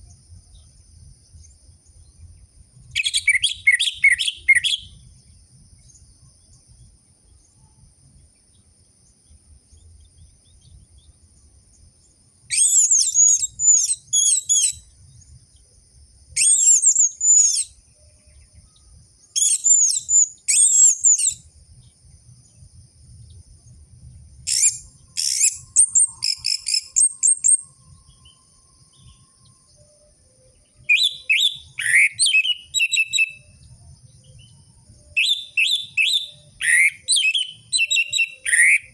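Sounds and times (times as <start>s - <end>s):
faint steady high tone: 13.0s - 24.2s, 24.8s - 38.9s.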